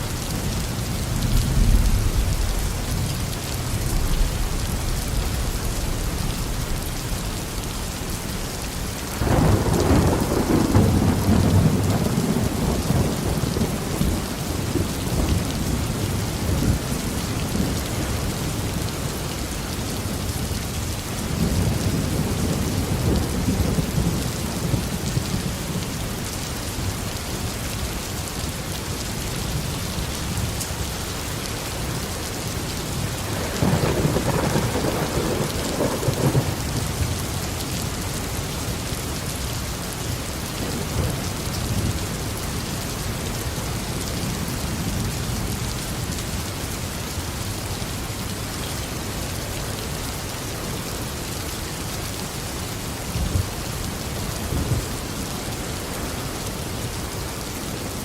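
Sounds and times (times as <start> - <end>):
heavy rain falling: 0.0 - 58.0
thunder rolling: 1.1 - 8.5, 33.2 - 36.8.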